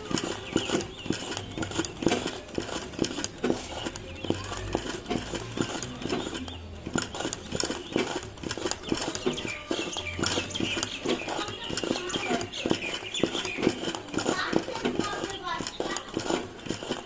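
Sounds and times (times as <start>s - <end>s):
sewing machine needle clacking: 0.0s - 17.0s.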